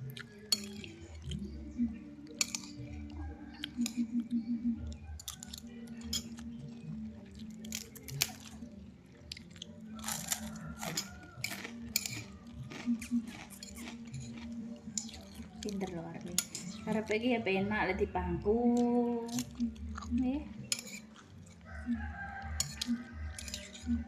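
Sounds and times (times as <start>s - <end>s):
chewing and crunching food: 0.0s - 17.3s, 18.6s - 24.0s.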